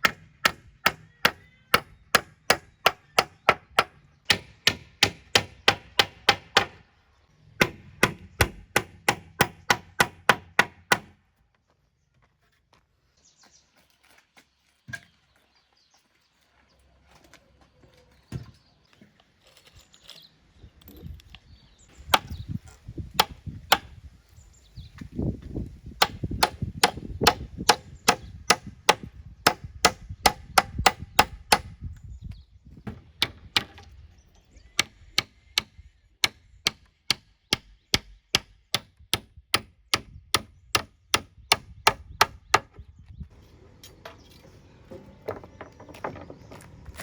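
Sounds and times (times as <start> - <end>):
tool striking wood: 7.6 - 11.2, 23.2 - 23.9, 26.0 - 31.7, 32.9 - 33.9.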